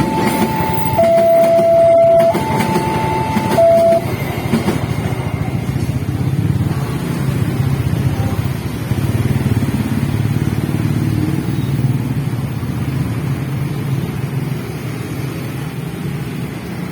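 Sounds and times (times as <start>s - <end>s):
motorcycle engines accelerating: 5.9s - 16.2s.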